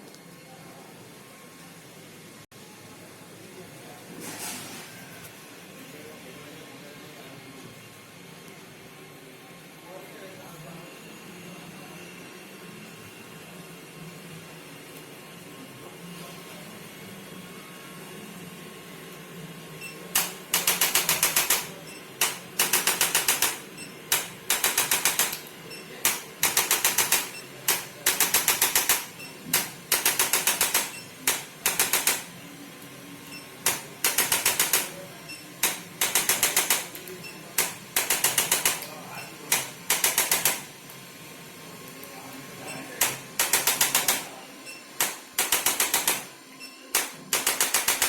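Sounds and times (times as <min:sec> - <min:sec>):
rapid mechanical clicks: 0:20.1 - 0:32.3, 0:33.6 - 0:35.0, 0:35.6 - 0:38.9, 0:39.5 - 0:40.7, 0:43.0 - 0:44.3, 0:45.0 - 0:46.3, 0:47.0 - 0:48.0.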